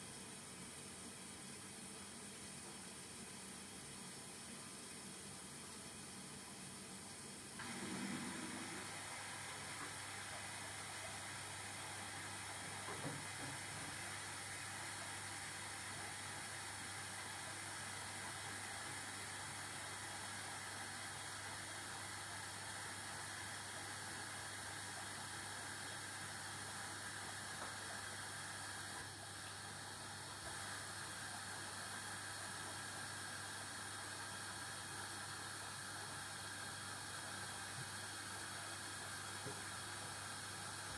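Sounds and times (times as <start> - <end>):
washing machine running: 7.6 - 15.3
washing machine knock: 12.9 - 13.9.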